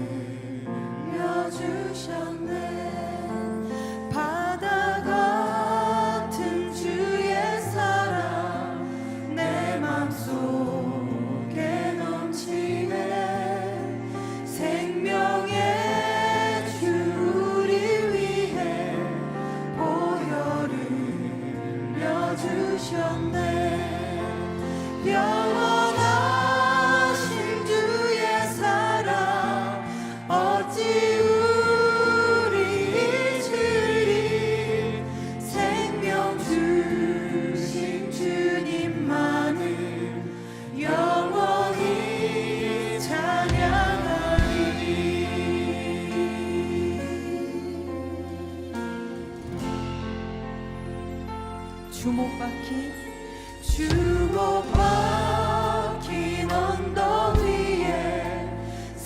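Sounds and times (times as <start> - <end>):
voices singing together: 0.0 - 49.8, 53.4 - 59.0
band playing bass and keys: 41.0 - 59.0.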